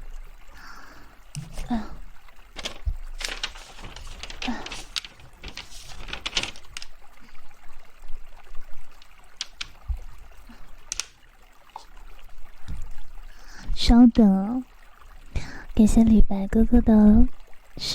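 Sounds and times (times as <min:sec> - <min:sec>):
paper rustling: 0:02.6 - 0:07.4, 0:09.0 - 0:10.1, 0:10.8 - 0:11.2.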